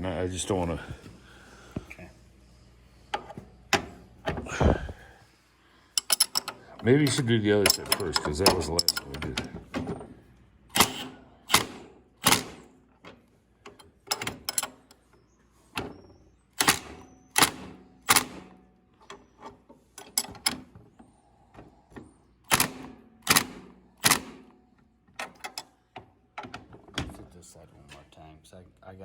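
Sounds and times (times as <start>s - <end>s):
ratchet wrench clicking: 6.0s - 9.2s, 10.7s - 12.6s.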